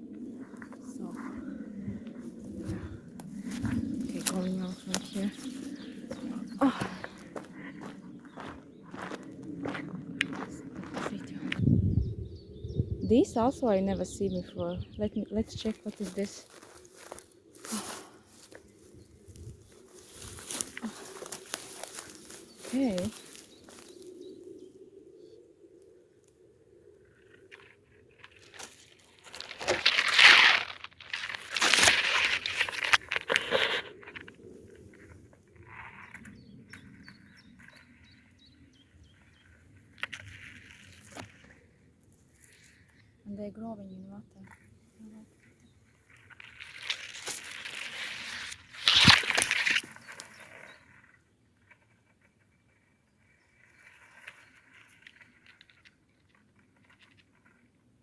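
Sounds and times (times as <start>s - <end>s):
footsteps crunching through undergrowth: 2.2s - 11.6s, 15.6s - 24.2s, 28.2s - 34.3s, 46.1s - 50.7s.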